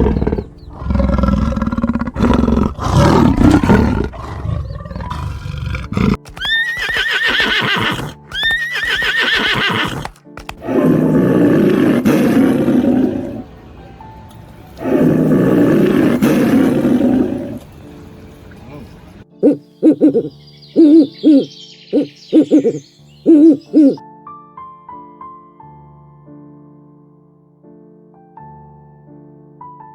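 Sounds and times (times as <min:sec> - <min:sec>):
rasping animal calls: 0:00.0 - 0:13.4, 0:19.4 - 0:24.0
soft background music: 0:00.0 - 0:29.9.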